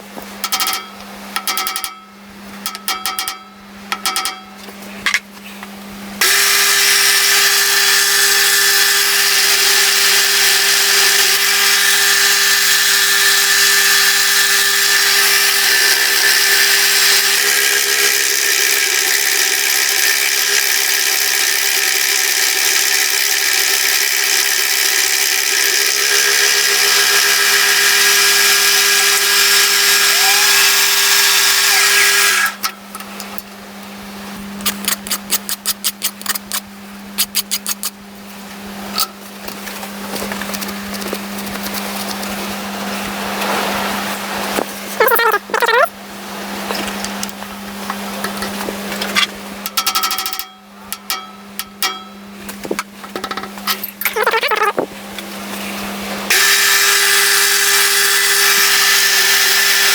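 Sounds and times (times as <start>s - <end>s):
knocks and clicks: 0.4s - 2.0s, 2.7s - 4.5s.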